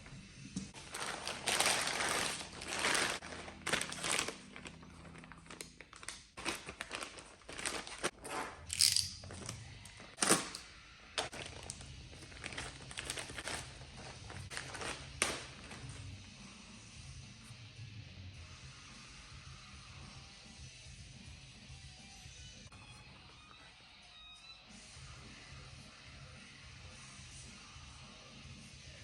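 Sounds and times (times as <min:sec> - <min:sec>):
packaging crinkling and tearing: 0:00.8 - 0:16.0.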